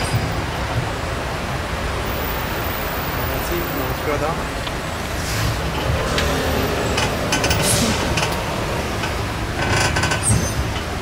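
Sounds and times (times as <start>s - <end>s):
rattles and clicks from car: 4.6s - 11.0s.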